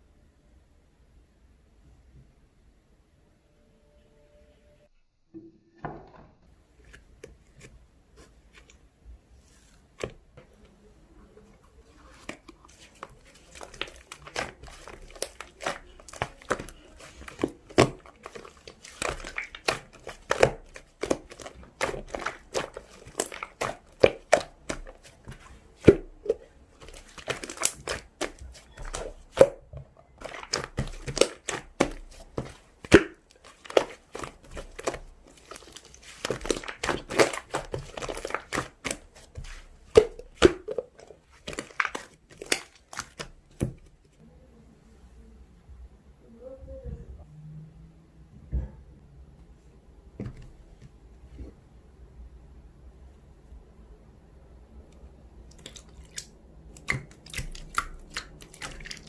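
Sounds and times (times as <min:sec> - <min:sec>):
slime squished crackling pops: 0:13.3 - 0:43.8, 0:55.6 - 0:59.0.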